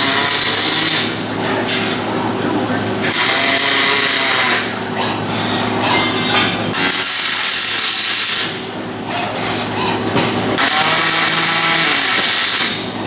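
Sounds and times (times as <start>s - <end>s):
welding hissing bursts: 0.0s - 1.2s, 2.5s - 4.8s, 6.5s - 8.7s, 10.3s - 13.0s
steady hum: 0.0s - 13.0s.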